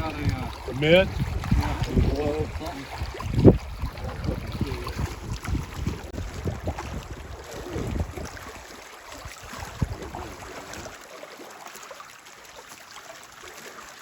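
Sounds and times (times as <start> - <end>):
wind rumbling on microphone: 0.0 - 11.0.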